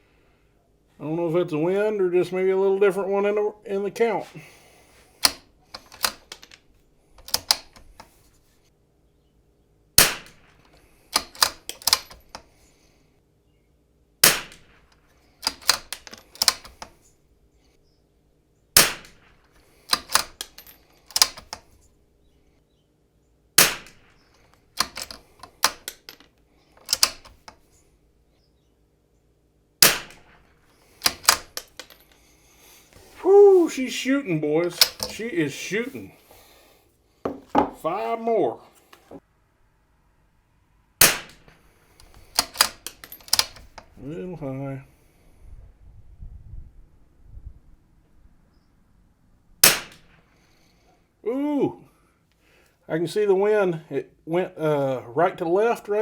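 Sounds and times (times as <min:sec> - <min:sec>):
metallic clicks of rifle bolt: 0:05.1 - 0:08.2, 0:10.0 - 0:12.6, 0:14.2 - 0:17.1, 0:18.8 - 0:21.9, 0:23.6 - 0:27.6, 0:29.8 - 0:32.2, 0:34.6 - 0:35.2, 0:41.0 - 0:44.0
rifle shots: 0:10.0 - 0:10.6, 0:14.2 - 0:14.9, 0:18.8 - 0:20.4, 0:23.6 - 0:24.2, 0:29.8 - 0:31.6, 0:41.0 - 0:41.6, 0:49.6 - 0:50.2.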